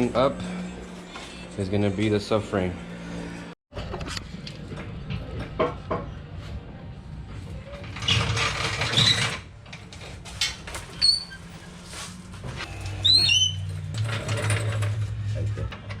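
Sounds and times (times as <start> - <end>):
scraping rustle: 8.0 - 15.3
short high squeaks: 12.7 - 13.8.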